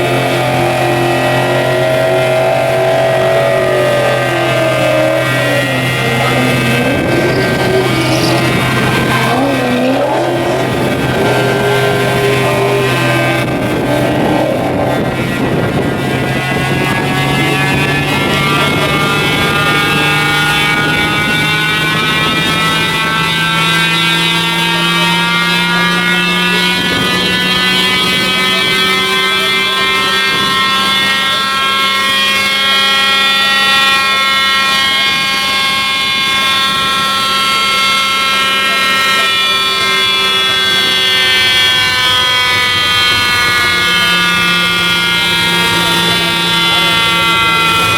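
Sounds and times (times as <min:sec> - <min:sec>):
car engine running steadily: 0:00.0 - 0:32.1
mechanical drone with high whine: 0:00.0 - 0:47.9.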